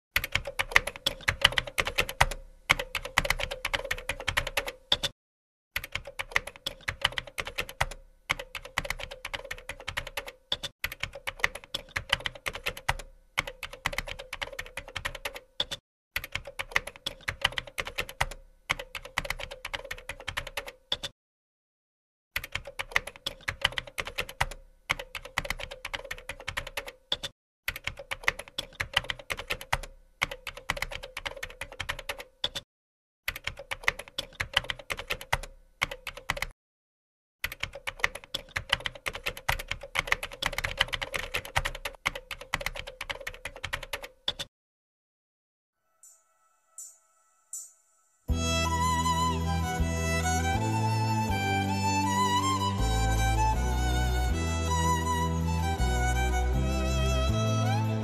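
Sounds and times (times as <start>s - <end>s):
rapid keyboard typing: 0.2s - 5.2s, 5.8s - 21.1s, 22.4s - 32.6s, 33.3s - 36.6s, 37.4s - 44.5s.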